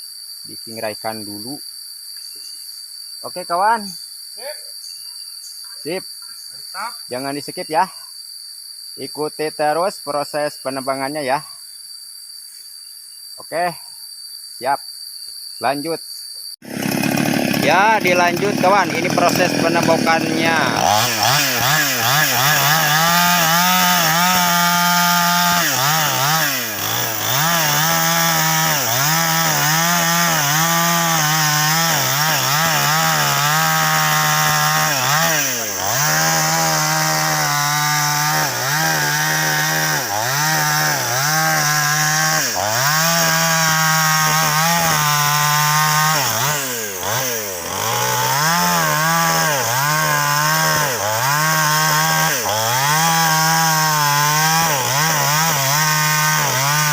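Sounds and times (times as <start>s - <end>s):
chainsaw cutting wood: 16.6s - 56.9s.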